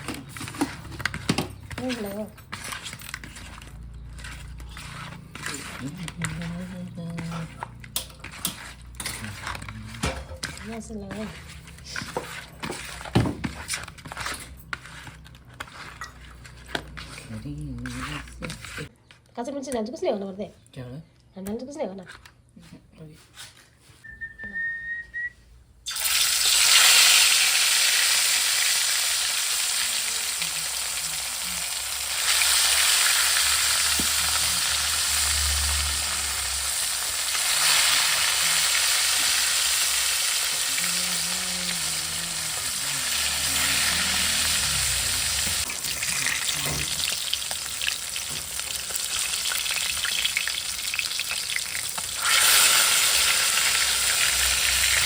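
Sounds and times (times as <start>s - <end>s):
food sizzling in hot oil: 25.9s - 55.0s.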